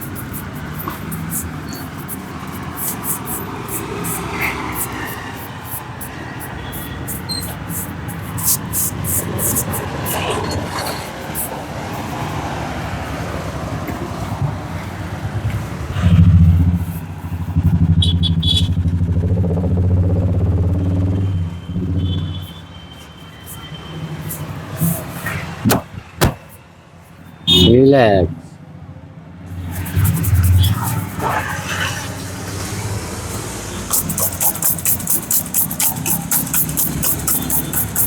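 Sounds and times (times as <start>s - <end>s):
vehicle engine running: 15.3s - 22.5s.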